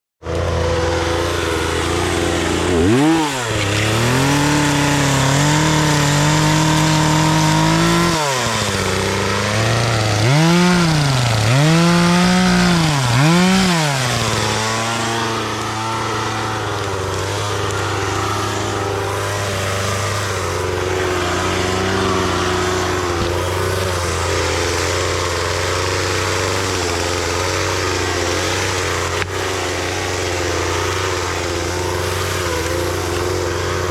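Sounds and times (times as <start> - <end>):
chainsaw engine revving and idling: 0.2 - 33.9.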